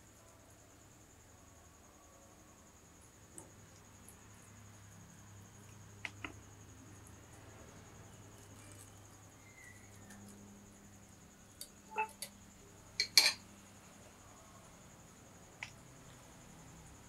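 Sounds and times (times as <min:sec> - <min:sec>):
cricket trilling: 0:00.0 - 0:17.0
kitchen utensils clinking: 0:13.0 - 0:13.4.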